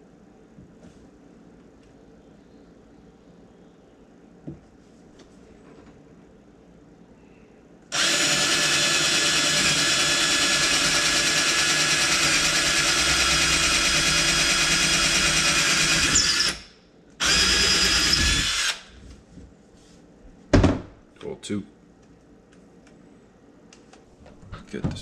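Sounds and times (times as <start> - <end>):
cordless drill boring wood: 7.9 - 18.9.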